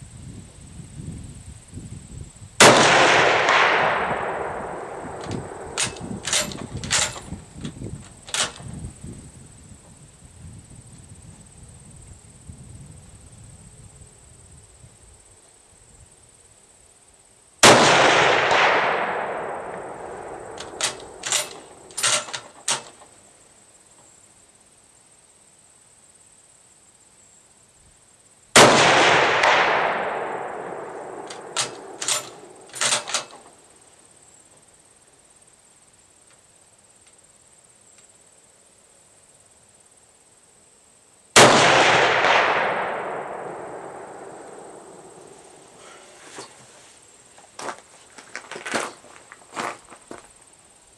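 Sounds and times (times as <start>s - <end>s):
rifle shots echoing: 2.6s - 7.3s, 17.6s - 22.9s, 28.6s - 33.5s, 41.4s - 45.7s
sharp clicks: 5.0s - 8.7s, 19.7s - 23.1s, 31.2s - 33.6s.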